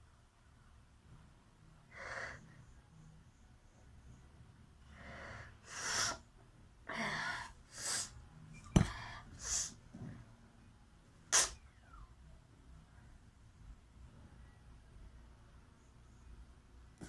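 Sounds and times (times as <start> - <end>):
woman sneezing: 11.4 - 11.6.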